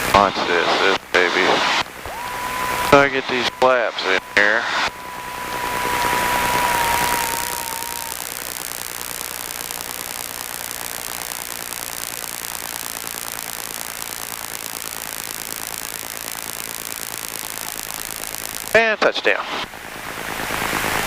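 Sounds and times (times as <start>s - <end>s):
steady high tone: 2.1s - 18.8s.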